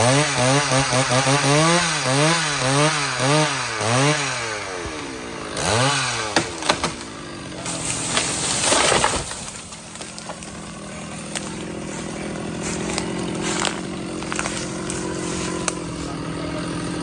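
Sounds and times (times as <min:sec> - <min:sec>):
chainsaw engine idling: 0:00.0 - 0:17.0
wood cracking and snapping: 0:04.6 - 0:16.3.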